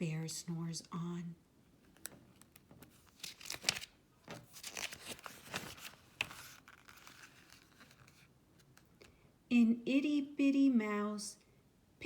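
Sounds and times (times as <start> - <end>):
paper rustling and crinkling: 1.8 - 9.0.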